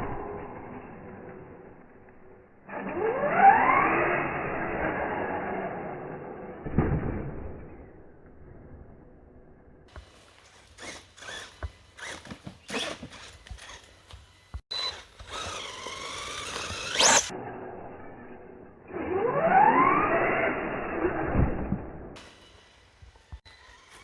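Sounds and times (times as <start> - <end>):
electric motor whining as it revs: 2.7 - 6.4, 9.9 - 18.3, 18.9 - 21.4, 22.2 - 24.0.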